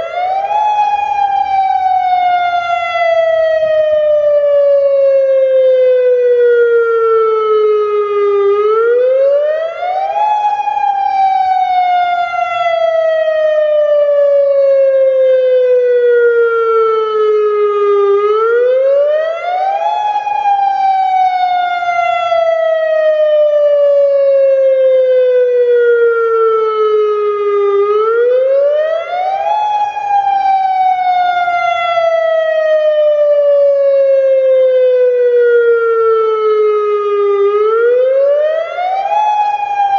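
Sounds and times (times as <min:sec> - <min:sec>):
warning siren wailing: 0:00.0 - 0:39.9.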